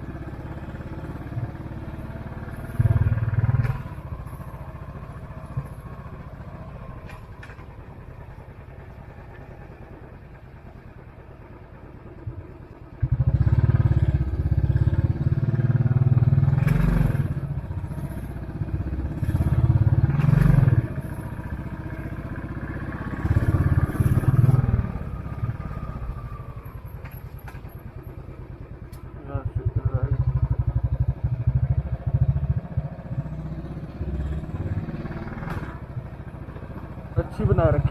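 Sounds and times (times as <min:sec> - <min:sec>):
motorcycle engine accelerating: 0:00.0 - 0:37.9.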